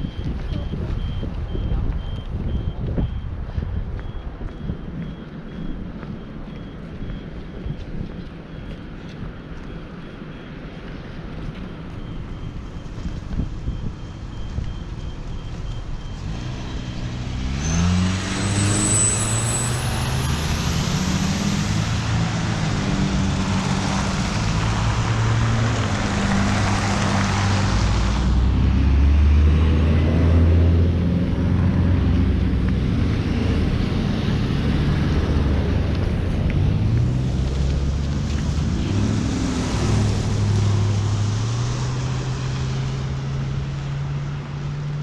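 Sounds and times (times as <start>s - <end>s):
street traffic passing: 0.0s - 45.0s
vehicle engine pulling away: 15.1s - 45.0s.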